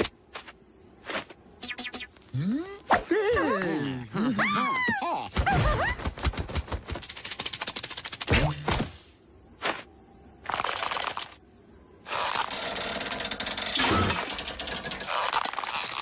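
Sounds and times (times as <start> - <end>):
fast run of clicks: 6.0 - 8.3, 10.4 - 11.4.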